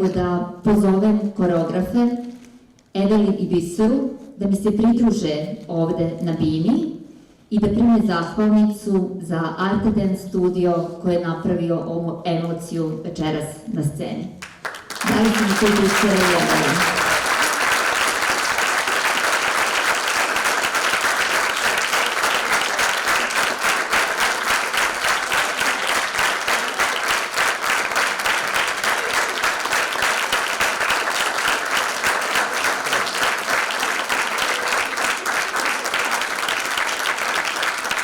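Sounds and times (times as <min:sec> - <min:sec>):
audience applauding: 0:14.4 - 0:38.0.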